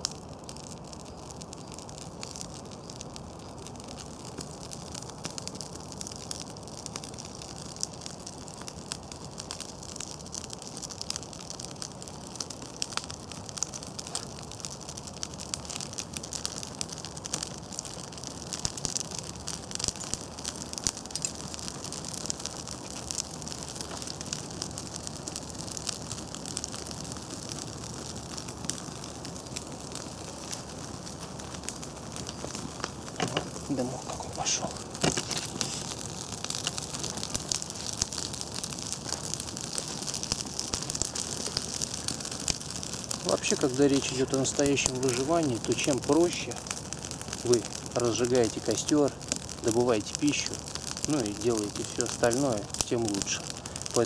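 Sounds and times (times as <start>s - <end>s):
kindling crackling in fire: 0.0s - 54.0s.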